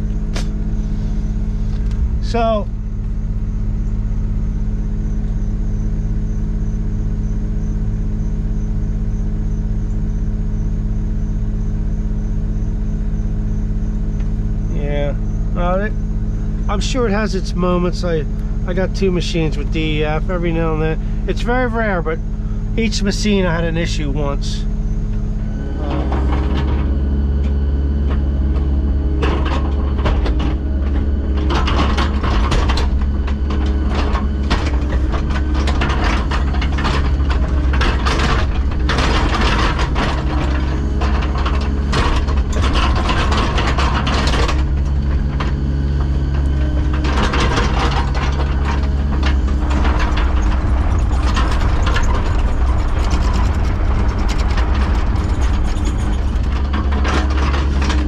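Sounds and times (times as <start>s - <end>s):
diesel engine running under load: 0.0s - 58.0s
metallic clanking and rattling: 22.8s - 58.0s.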